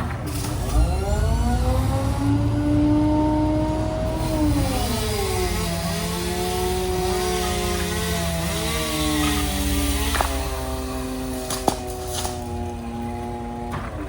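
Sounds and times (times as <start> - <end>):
engine running: 0.0 - 14.0.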